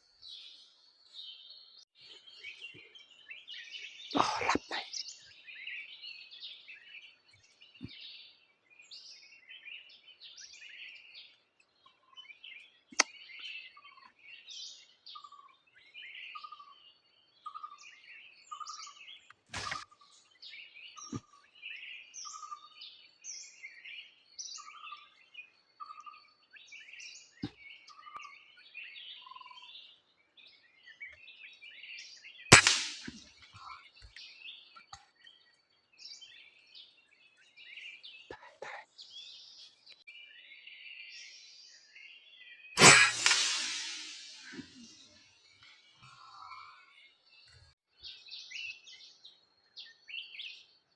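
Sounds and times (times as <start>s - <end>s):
small birds chirping: 0.0s - 50.8s
air rifle shot: 32.5s - 33.2s, 42.8s - 44.9s
small sharp clicks: 32.5s - 33.2s.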